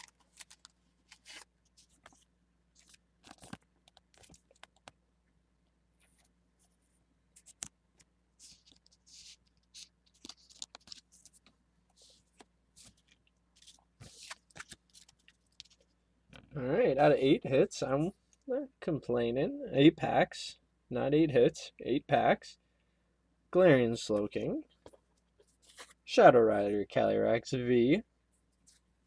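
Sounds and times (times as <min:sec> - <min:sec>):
plastic clicks and crinkles: 0:00.0 - 0:02.2, 0:02.8 - 0:05.0, 0:07.4 - 0:11.6, 0:12.3 - 0:16.5.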